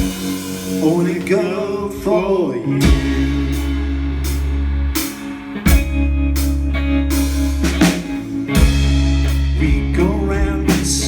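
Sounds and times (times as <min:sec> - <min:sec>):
drum kit hits: 0:00.0 - 0:01.2, 0:02.8 - 0:11.0
electric guitar: 0:00.0 - 0:11.0
rock band playing: 0:00.0 - 0:11.0
sustained bass notes: 0:00.0 - 0:11.0
person singing: 0:00.7 - 0:05.3, 0:09.2 - 0:11.0.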